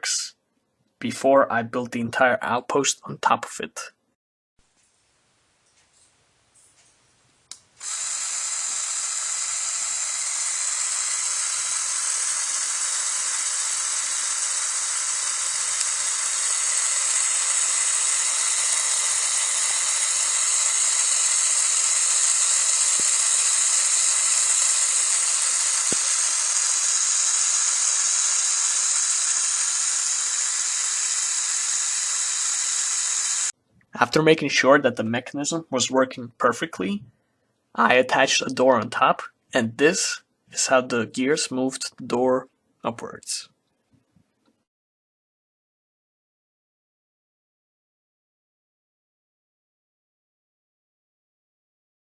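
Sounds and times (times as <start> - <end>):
whirring gear whine: 7.8 - 33.5.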